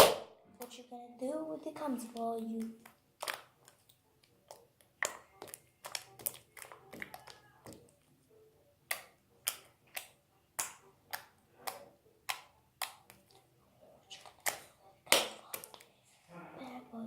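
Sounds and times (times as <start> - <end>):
slime popping and clicking: 2.2 - 7.9, 8.8 - 13.4.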